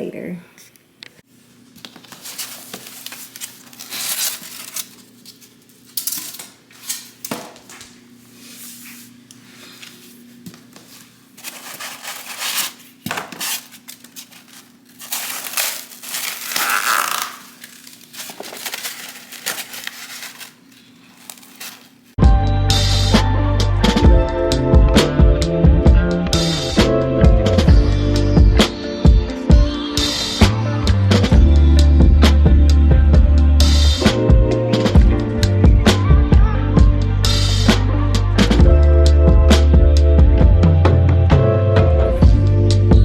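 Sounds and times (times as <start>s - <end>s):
packaging crinkling and tearing: 2.0s - 7.2s, 11.3s - 22.2s.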